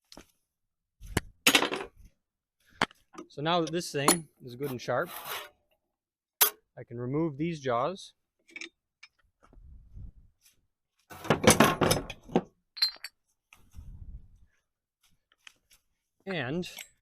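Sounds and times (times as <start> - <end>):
metallic clinks and clunks: 8.4 - 9.3, 11.3 - 13.3, 16.5 - 17.0.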